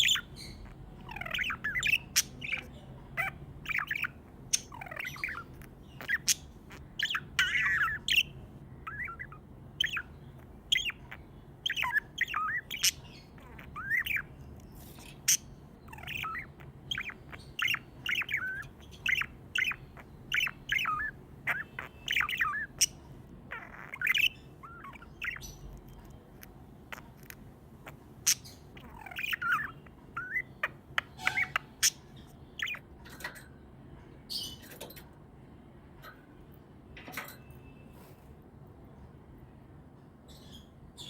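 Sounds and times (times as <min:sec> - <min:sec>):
budgerigars chirping: 0:00.0 - 0:33.6.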